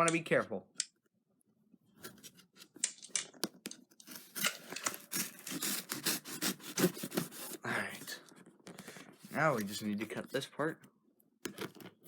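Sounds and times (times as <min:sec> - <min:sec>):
clicks and scraping rasps: 0:02.0 - 0:07.6
knife cutting into package: 0:04.0 - 0:07.6.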